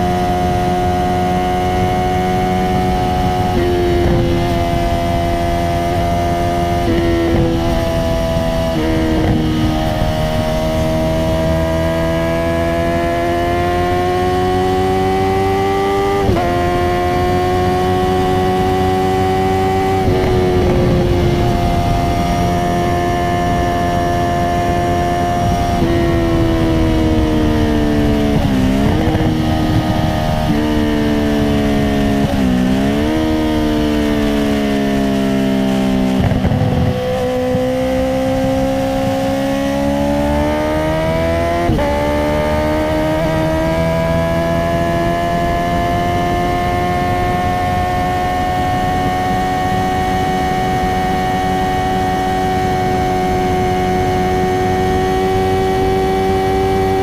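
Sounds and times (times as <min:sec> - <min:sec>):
motorcycle engine revving: 0:00.0 - 0:57.0
gear changes: 0:00.1 - 0:35.4.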